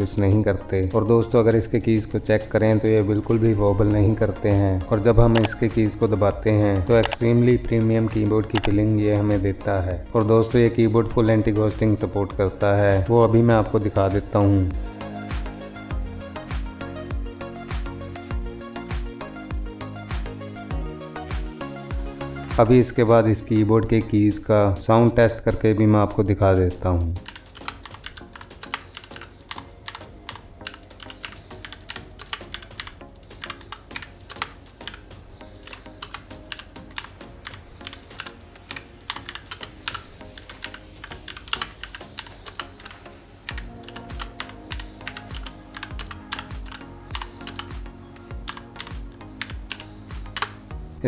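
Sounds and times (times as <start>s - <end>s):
background music: 0.0s - 51.0s
mechanical keyboard typing: 5.3s - 5.7s, 6.9s - 7.4s, 8.4s - 8.9s, 48.3s - 50.6s
bass beat: 14.2s - 22.6s, 43.5s - 51.0s.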